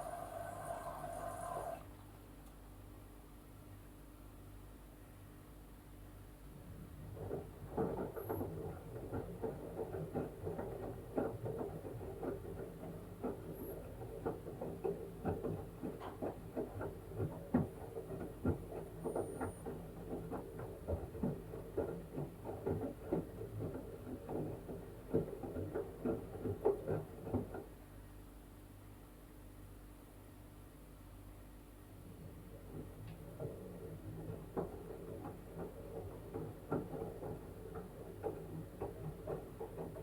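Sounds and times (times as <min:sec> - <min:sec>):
washing machine motor hum: 0:00.0 - 0:02.0, 0:06.5 - 0:27.8, 0:31.7 - 0:40.0
washing machine drum tumbling: 0:32.0 - 0:40.0.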